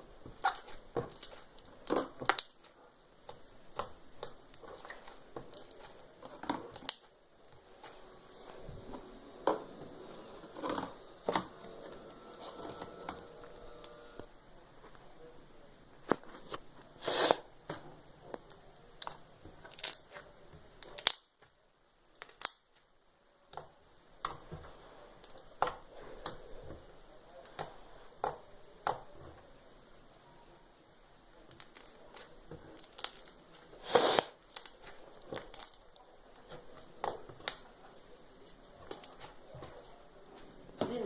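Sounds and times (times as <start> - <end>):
slime crackle: 18.5 - 21.4, 31.5 - 37.7.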